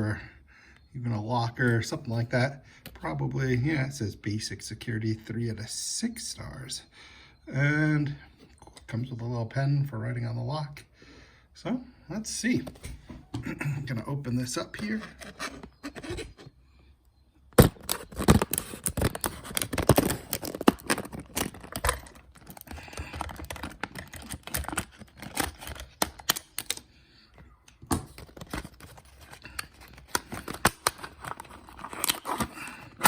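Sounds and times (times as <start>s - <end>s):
packaging crackling and tearing: 17.6s - 26.9s, 27.9s - 33.0s.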